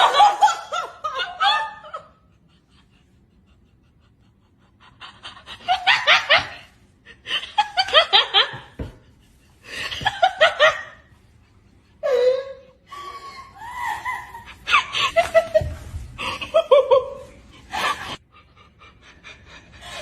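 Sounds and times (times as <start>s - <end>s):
person laughing hard: 11.9s - 18.2s.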